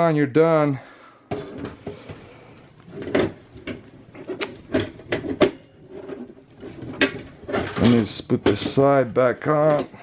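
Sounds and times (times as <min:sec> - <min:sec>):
computer case panel scraping: 0:02.8 - 0:08.9.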